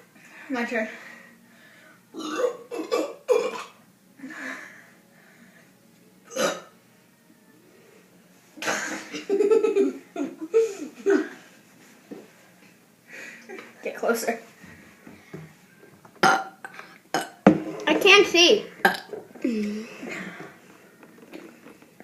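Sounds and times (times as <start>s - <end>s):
person burping: 2.2s - 3.8s, 6.3s - 6.7s, 16.2s - 17.4s, 18.8s - 20.3s.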